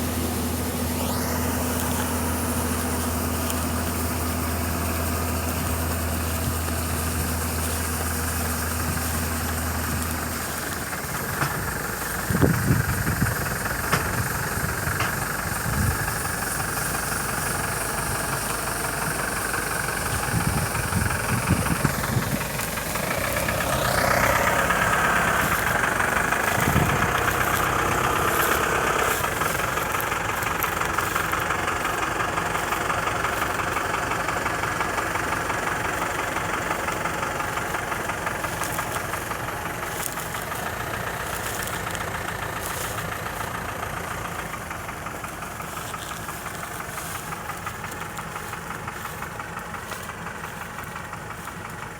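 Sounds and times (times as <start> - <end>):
combine harvester droning: 0.0 - 51.9.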